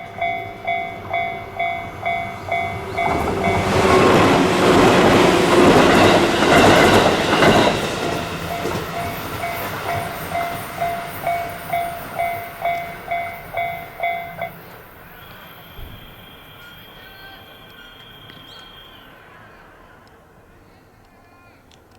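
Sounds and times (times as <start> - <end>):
level crossing warning bell: 0.0 - 4.2, 5.0 - 19.3
train wheels clattering: 0.1 - 18.9.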